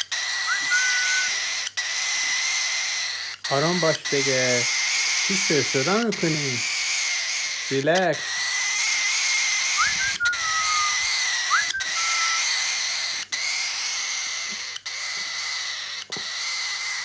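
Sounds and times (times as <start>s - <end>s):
cockatiel chick begging hiss: 0.2s - 2.5s, 9.8s - 12.8s
short falling whistled notes: 0.5s - 1.3s, 9.8s - 12.6s.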